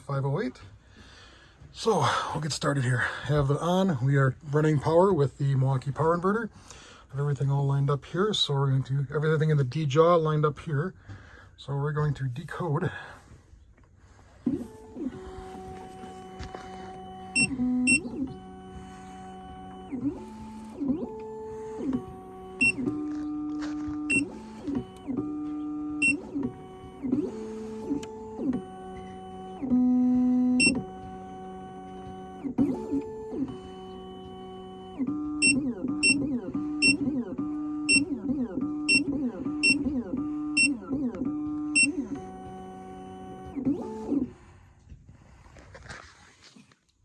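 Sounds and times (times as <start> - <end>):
stepper motors whining: 14.5 - 44.4.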